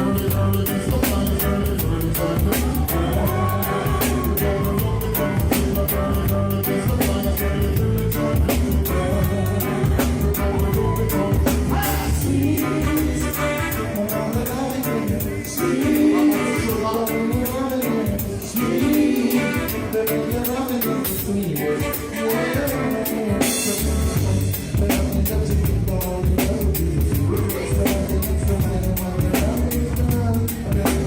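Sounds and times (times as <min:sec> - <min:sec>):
person singing: 0:00.0 - 0:31.0
reggae band playing: 0:00.0 - 0:31.0.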